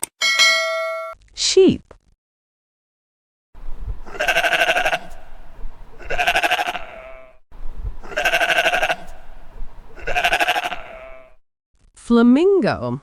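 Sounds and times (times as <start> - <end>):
sheep bleating: 4.0 - 5.3, 6.0 - 7.4, 8.0 - 9.2, 10.0 - 11.4.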